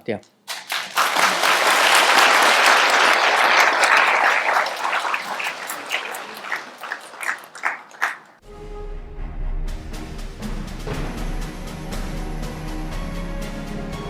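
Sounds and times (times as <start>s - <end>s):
audience applauding: 0.5s - 8.4s.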